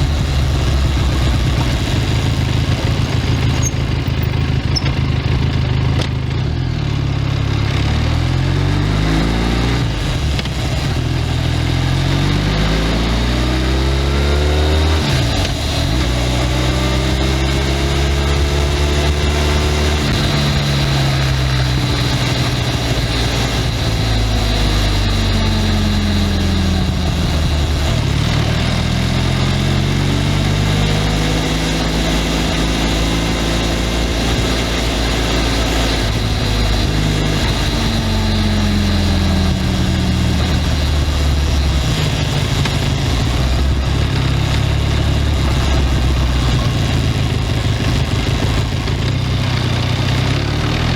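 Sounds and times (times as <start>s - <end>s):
rush of noise: 0.0s - 4.4s
motorcycle engine: 0.0s - 50.9s.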